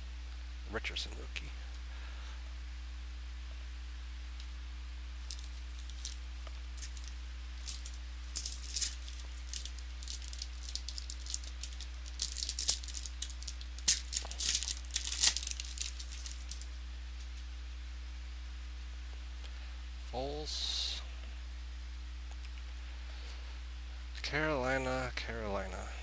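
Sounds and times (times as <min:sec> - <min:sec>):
steady low hum: 0:00.0 - 0:26.0
wrapper crinkling and crackling: 0:05.2 - 0:17.4.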